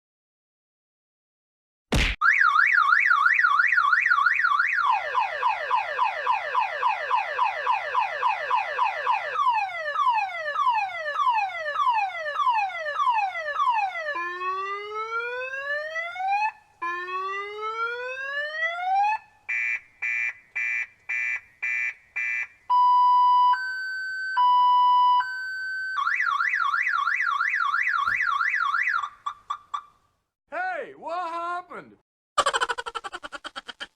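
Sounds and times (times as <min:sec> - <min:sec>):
motorbike alarm siren tones: 0:02.2 - 0:29.3.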